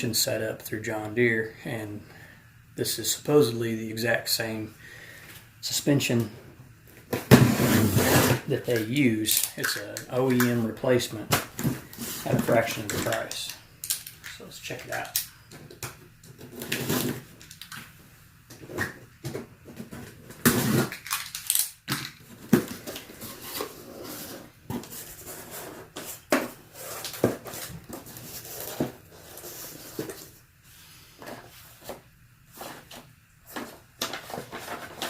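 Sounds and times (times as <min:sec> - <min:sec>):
packaging rustling and crinkling: 0:11.2 - 0:17.9, 0:19.7 - 0:30.4.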